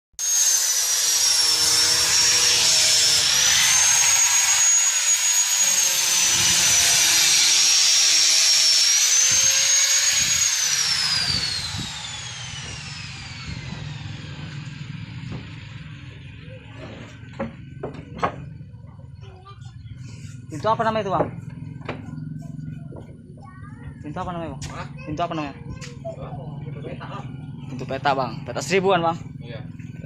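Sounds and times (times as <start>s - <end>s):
wood cutting hiss: 0.2s - 14.8s
power tool whining: 0.2s - 18.7s.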